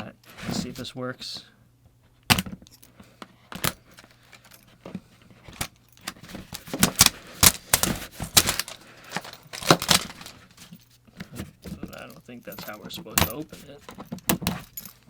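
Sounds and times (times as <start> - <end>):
keys jangling against plastic packaging: 3.6 - 4.8, 5.5 - 11.0, 11.6 - 15.0.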